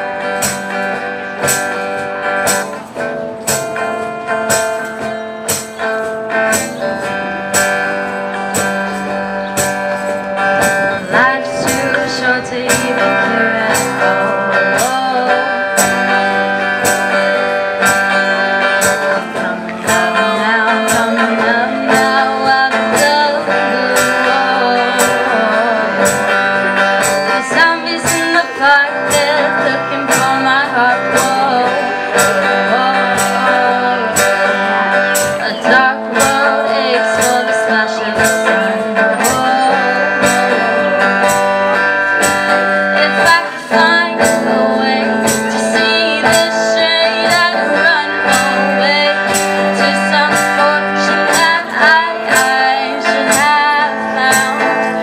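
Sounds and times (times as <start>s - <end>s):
band playing a song: 0.0s - 55.0s
guitars strumming: 0.0s - 55.0s.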